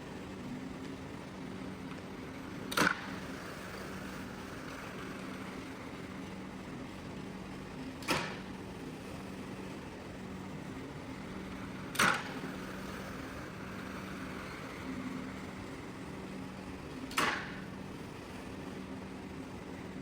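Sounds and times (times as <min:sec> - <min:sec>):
machine humming: 0:00.0 - 0:20.0
sharp click: 0:08.0 - 0:08.4, 0:11.9 - 0:12.3, 0:17.1 - 0:17.6.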